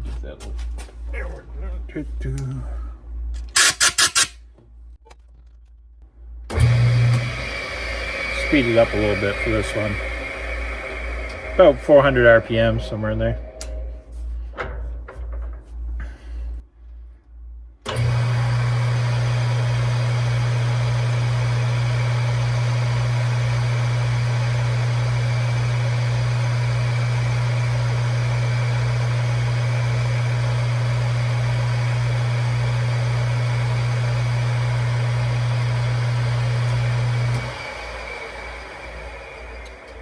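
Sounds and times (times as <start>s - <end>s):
metal lathe running: 6.5s - 14.0s, 17.9s - 40.0s.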